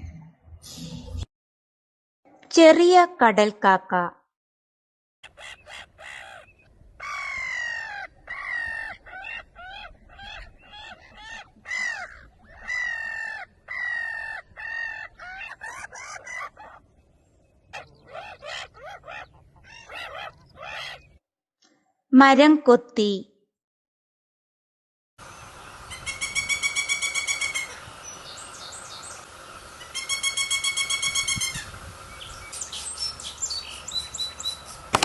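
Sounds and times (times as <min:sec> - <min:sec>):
gulls calling: 0:05.2 - 0:21.2, 0:25.2 - 0:35.0.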